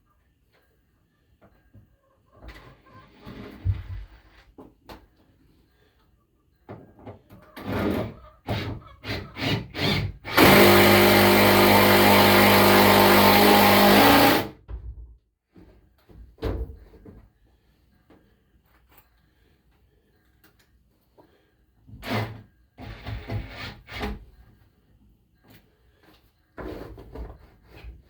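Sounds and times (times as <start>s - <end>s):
power drill driving screw: 9.0s - 14.6s.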